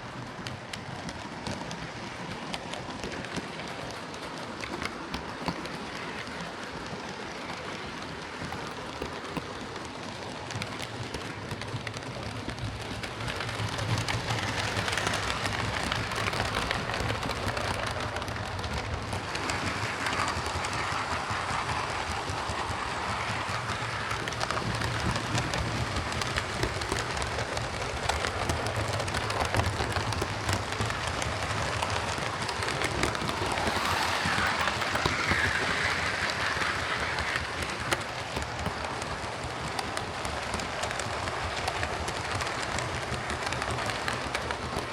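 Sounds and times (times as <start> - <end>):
wheels crackling on rail: 0.0 - 44.9
model train motor buzzing: 12.2 - 44.8.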